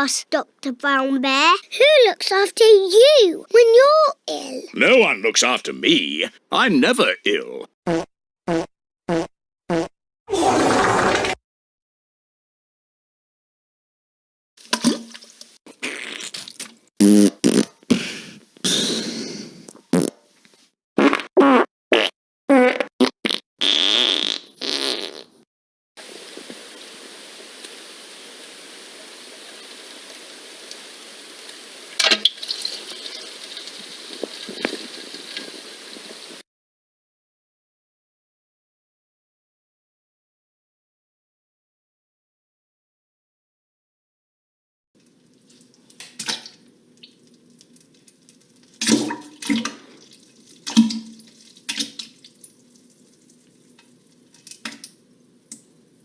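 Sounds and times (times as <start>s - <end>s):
wet splashing: 14.6s - 18.1s, 31.8s - 36.4s, 45.3s - 54.8s
crackling and fizzing: 14.6s - 19.0s, 26.0s - 36.4s, 45.0s - 56.0s
steady hiss: 26.0s - 36.4s.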